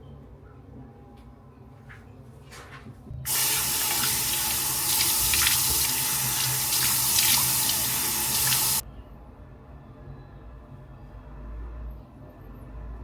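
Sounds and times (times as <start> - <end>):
tap water running into sink: 3.3 - 8.8.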